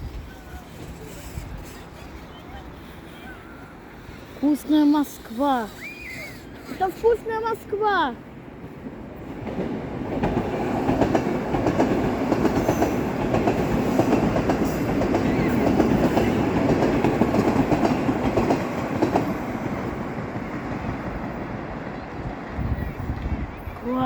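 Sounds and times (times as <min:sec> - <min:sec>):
train wheels clattering: 0:08.8 - 0:23.9.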